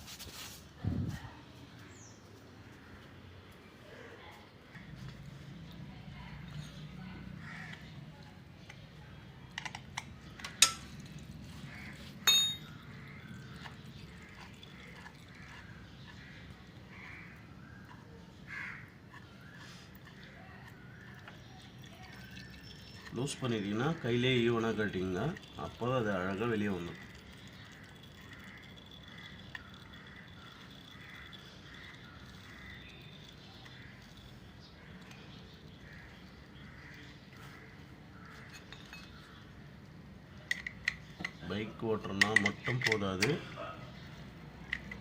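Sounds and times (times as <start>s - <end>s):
distant bird calls: 1.2s - 45.0s
spanner clinking on metal: 9.6s - 11.0s, 12.2s - 12.8s, 42.1s - 43.4s.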